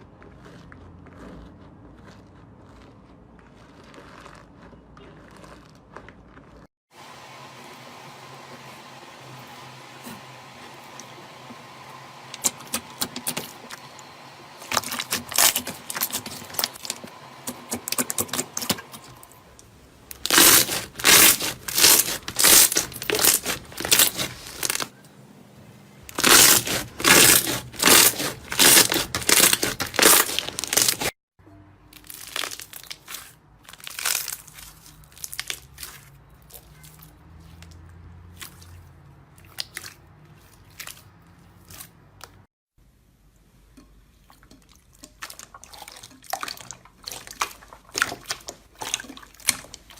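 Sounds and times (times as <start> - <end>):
slime crackling and crunching: 0.0 - 6.7, 14.6 - 24.9, 26.1 - 31.2, 31.9 - 42.5, 45.0 - 49.9.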